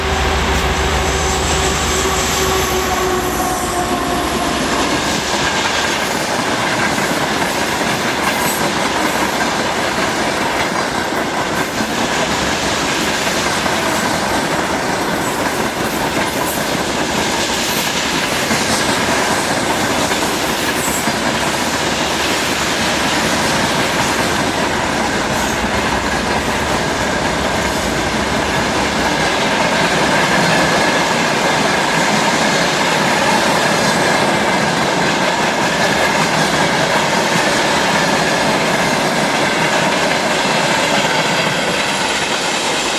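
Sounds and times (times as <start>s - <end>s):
diesel locomotive hum: 0.0s - 6.6s, 9.9s - 36.8s
freight wagons rumbling on rails: 0.0s - 42.9s.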